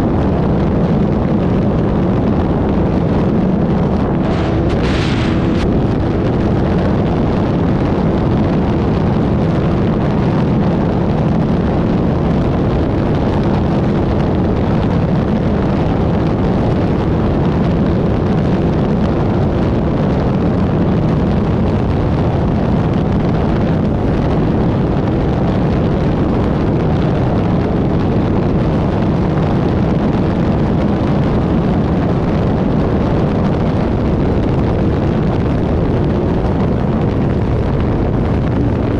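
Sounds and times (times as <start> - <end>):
race car engine running loudly: 0.0 - 30.2, 33.6 - 38.9
even rush of noise: 0.7 - 8.9, 35.6 - 38.9.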